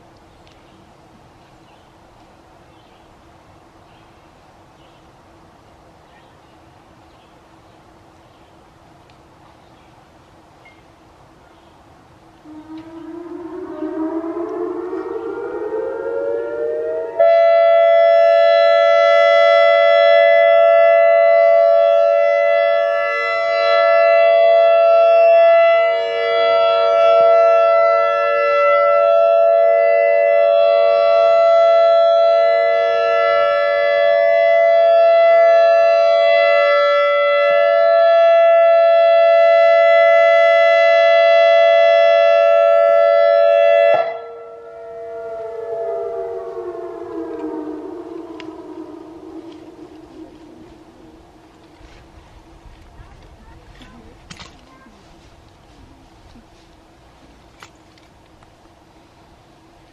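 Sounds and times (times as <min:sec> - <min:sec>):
electronic warning siren: 0:12.4 - 0:52.9.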